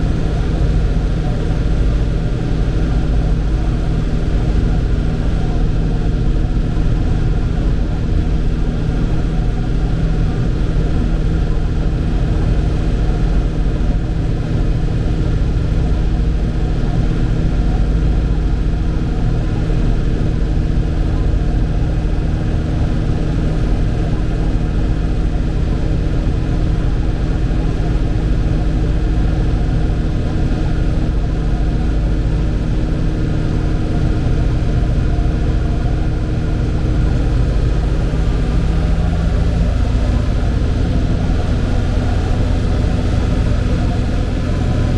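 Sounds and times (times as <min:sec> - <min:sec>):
tractor engine droning: 0:21.1 - 0:44.9.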